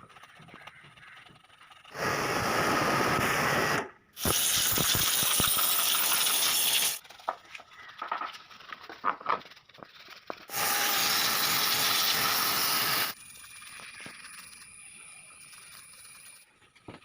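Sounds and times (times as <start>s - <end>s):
spray hissing: 1.9s - 7.0s, 10.5s - 13.2s.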